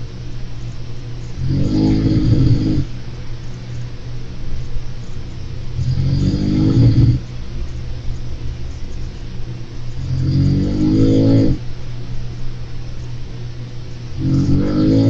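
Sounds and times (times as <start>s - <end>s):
person snoring: 1.4s - 2.9s, 5.8s - 7.2s, 10.0s - 11.6s, 14.2s - 15.0s.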